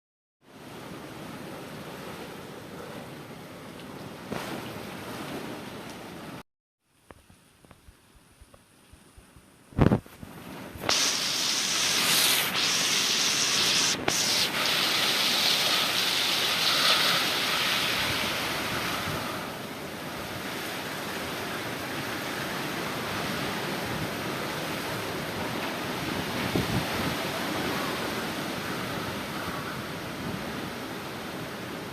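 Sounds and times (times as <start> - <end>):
strong storm wind gusting: 10.6 - 20.2, 22.8 - 31.9.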